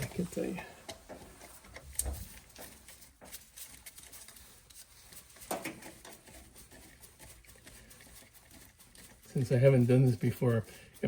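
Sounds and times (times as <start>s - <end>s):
hand tool clicks and rubbing: 0.8s - 9.3s.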